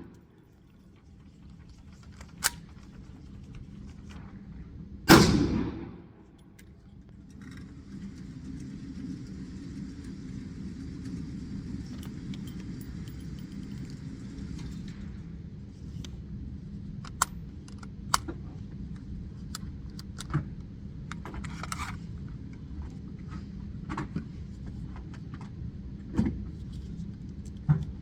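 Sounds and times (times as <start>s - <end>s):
pistol shot: 5.1s - 6.0s.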